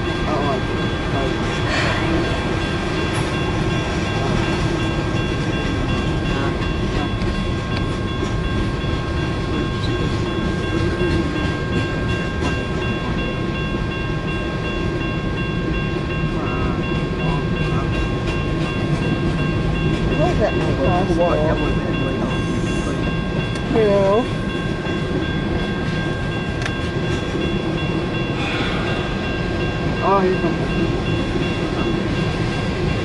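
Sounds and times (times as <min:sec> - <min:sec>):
train wheels rumbling on rails: 0:00.0 - 0:33.0.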